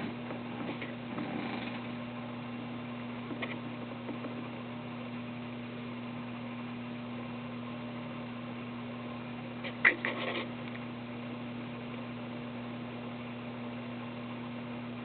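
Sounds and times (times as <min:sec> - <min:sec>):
electrical hum: 0:00.0 - 0:15.0
man snoring: 0:01.1 - 0:01.8.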